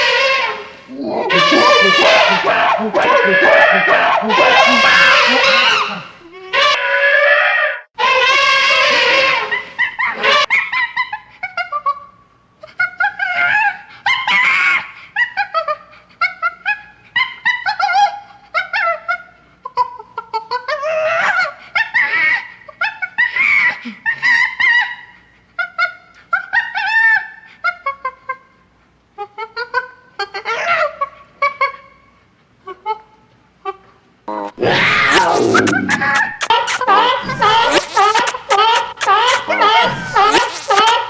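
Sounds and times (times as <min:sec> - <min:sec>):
cartoon squeaky yelps and chatter: 0:01.0 - 0:06.0, 0:34.3 - 0:41.0.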